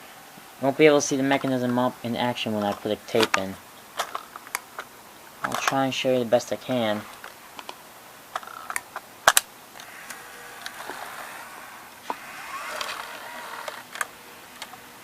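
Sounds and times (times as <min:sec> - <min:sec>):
tape mechanism motor whirring: 0:09.8 - 0:14.9.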